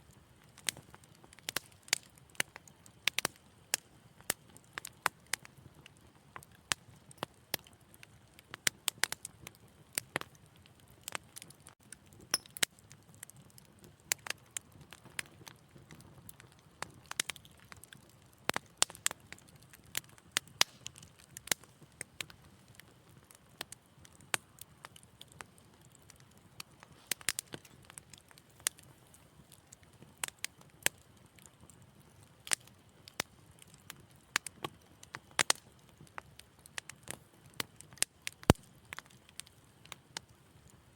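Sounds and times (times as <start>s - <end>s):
wood fire crackling: 0.0s - 40.9s.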